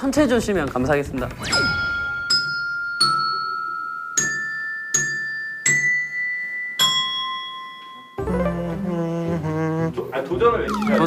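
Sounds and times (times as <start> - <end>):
tuned bells melody: 1.4 - 8.6, 10.7 - 11.0.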